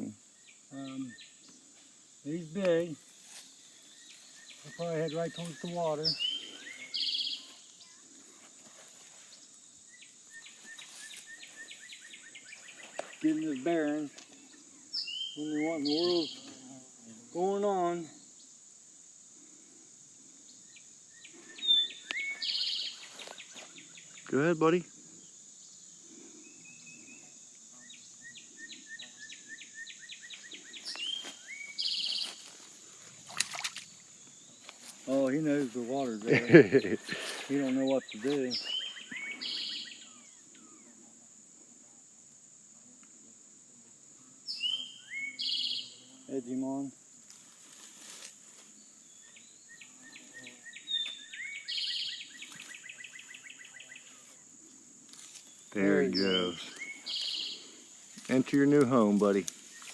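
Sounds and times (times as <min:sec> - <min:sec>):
songbird chirping: 0:00.0 - 0:41.8, 0:44.1 - 0:59.9
insects droning: 0:00.0 - 0:59.9
bird trill: 0:04.1 - 0:07.9, 0:21.6 - 0:23.1, 0:28.3 - 0:32.4, 0:37.8 - 0:40.3, 0:44.5 - 0:46.0, 0:50.4 - 0:54.0, 0:56.0 - 0:57.8
buzzy bird trill: 0:21.6 - 0:23.4, 0:30.0 - 0:32.5, 0:36.4 - 0:40.2, 0:44.5 - 0:46.0, 0:55.4 - 0:59.9.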